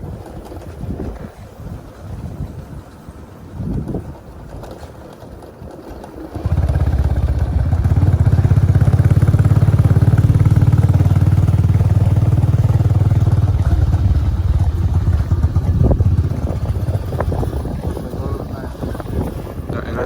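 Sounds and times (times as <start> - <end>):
motor vehicle engine running: 5.4 - 20.0.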